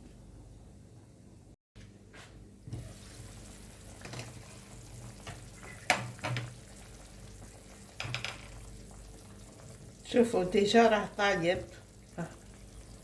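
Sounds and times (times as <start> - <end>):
chicken wings sizzling in pan: 2.7 - 13.0.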